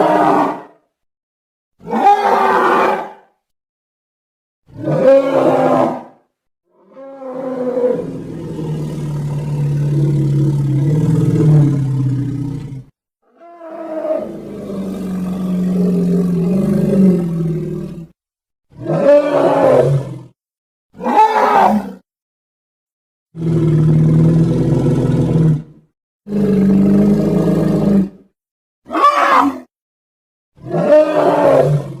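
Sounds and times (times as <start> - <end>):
low animal roars: 4.7 - 20.4, 23.3 - 28.3, 30.6 - 32.0.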